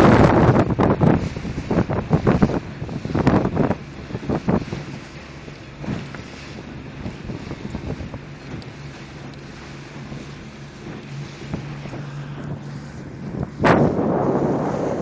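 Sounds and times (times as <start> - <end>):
wind buffeting microphone: 0.0 - 15.0
steady low hum: 8.2 - 15.0.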